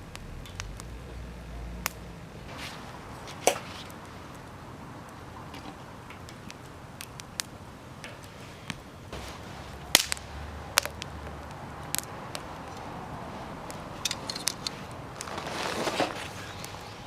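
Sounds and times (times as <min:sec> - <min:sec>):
wood cracking and snapping: 0:09.9 - 0:12.9, 0:13.6 - 0:16.8.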